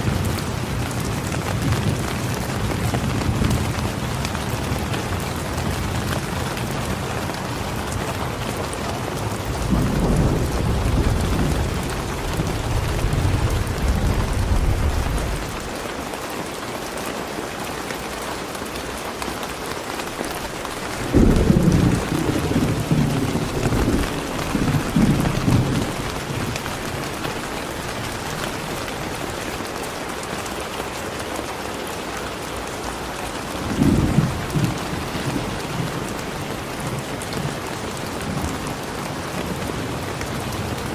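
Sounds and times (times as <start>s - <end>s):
rolling thunder rumbles: 0.0s - 15.8s, 20.4s - 29.7s, 33.5s - 40.9s
steady rain falling: 0.0s - 40.9s.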